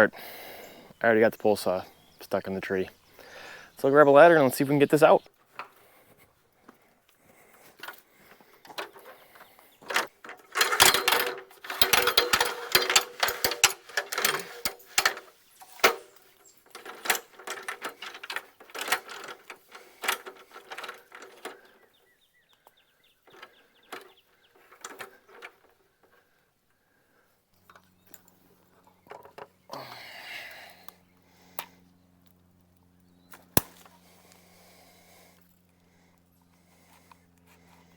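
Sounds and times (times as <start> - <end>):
metal ladder and tools clattering: 8.7 - 21.7.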